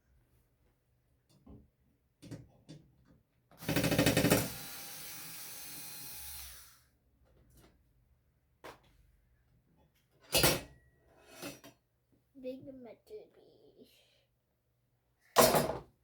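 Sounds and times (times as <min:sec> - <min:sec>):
small electric power tool running: 0:03.6 - 0:06.9.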